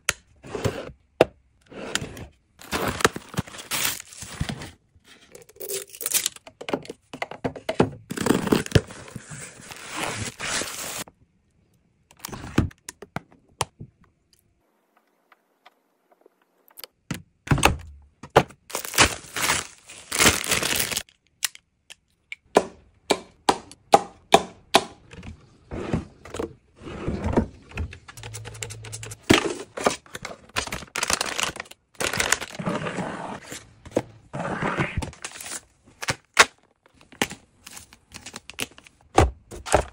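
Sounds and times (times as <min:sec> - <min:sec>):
plastic packaging crinkling: 0:02.6 - 0:04.5, 0:18.7 - 0:21.2, 0:30.5 - 0:32.6.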